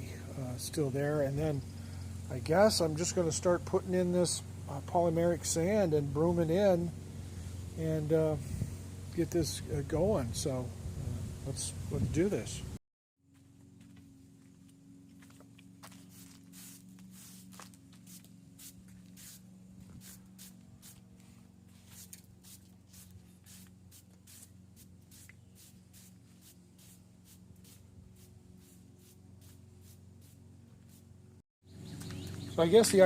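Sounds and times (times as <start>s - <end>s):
steady low hum: 0.0s - 33.0s
broom sweeping on bricks: 15.8s - 31.2s.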